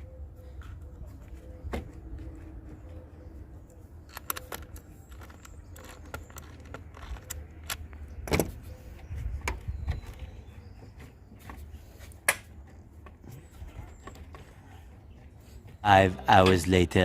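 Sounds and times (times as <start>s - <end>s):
metal tools clicking and clanking: 4.1s - 7.9s.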